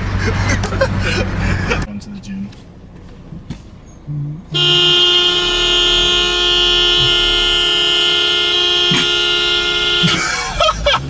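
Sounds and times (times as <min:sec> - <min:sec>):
air horn blast: 0:04.5 - 0:10.3.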